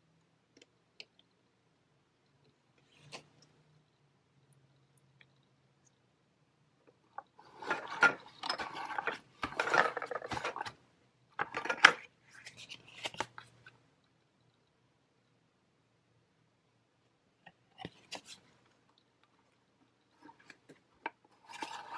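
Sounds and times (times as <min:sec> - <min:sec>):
plastic toy pieces clattering: 0:07.5 - 0:10.8.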